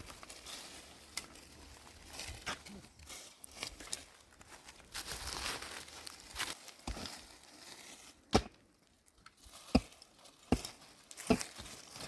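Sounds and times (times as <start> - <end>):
hand tool striking wood: 8.3 - 8.6, 9.6 - 11.8.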